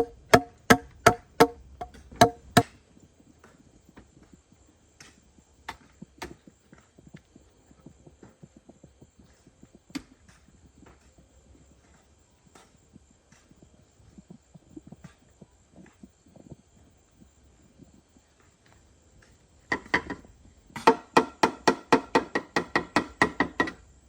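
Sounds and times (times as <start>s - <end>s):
faint knocking and tapping: 0.0s - 2.6s.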